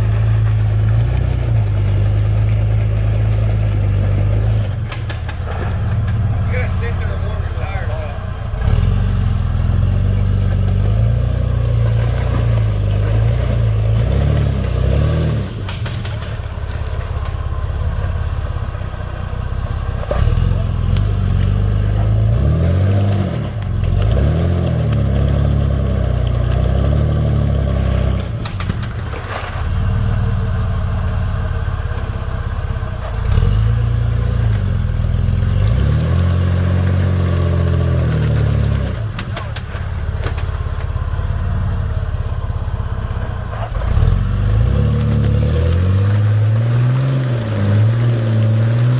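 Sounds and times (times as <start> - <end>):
engine revving hard: 5.5 - 15.6, 20.0 - 28.4, 33.0 - 39.2, 43.5 - 48.9.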